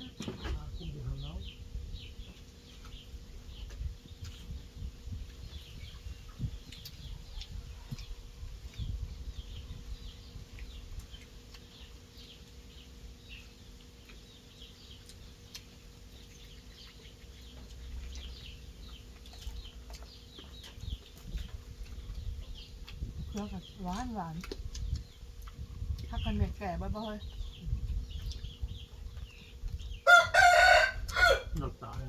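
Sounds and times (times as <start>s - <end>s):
small birds chirping: 0.0s - 32.0s
low rumble: 20.7s - 30.0s.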